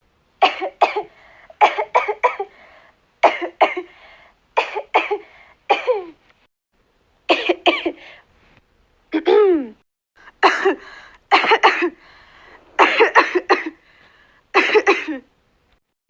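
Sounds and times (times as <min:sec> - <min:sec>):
girl coughing: 0:00.4 - 0:02.5, 0:03.2 - 0:03.9, 0:04.6 - 0:06.2, 0:07.3 - 0:08.1, 0:09.2 - 0:09.7, 0:10.4 - 0:13.8, 0:14.6 - 0:15.3
breathy noise: 0:11.8 - 0:14.4.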